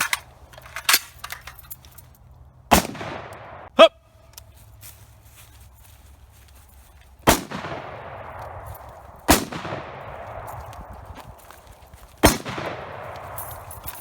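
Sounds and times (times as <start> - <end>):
gunshots with echo: 2.7 - 3.7, 7.3 - 10.9, 12.2 - 14.0.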